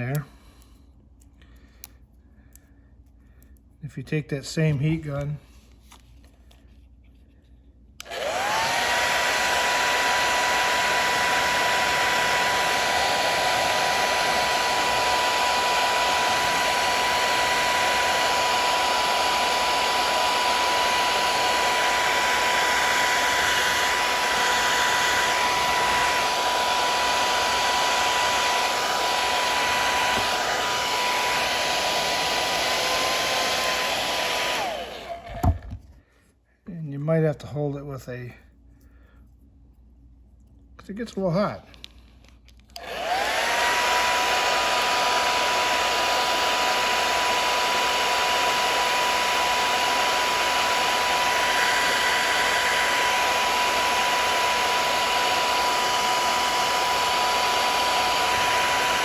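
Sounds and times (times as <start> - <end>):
heat gun blowing with whine: 0.0 - 0.7, 8.0 - 36.0, 42.7 - 59.0
heat gun switch: 8.0 - 35.7, 42.7 - 59.0.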